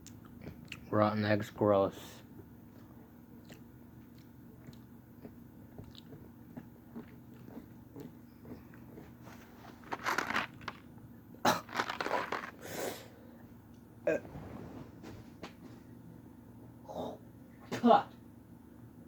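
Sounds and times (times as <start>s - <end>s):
person chewing a jelly bean: 0.0s - 0.9s, 2.4s - 12.6s.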